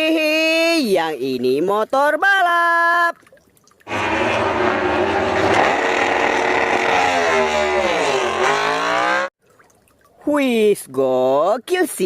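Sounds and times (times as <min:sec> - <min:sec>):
racing motorcycle engine revving: 0:03.9 - 0:09.3.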